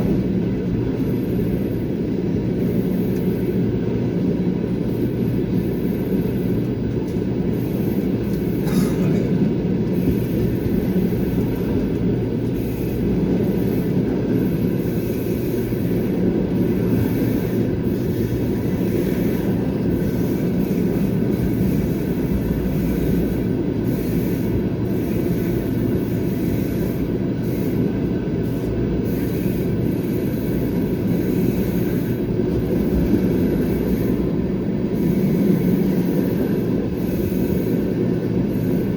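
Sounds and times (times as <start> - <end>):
train wheels rumbling on rails: 0.0 - 38.9.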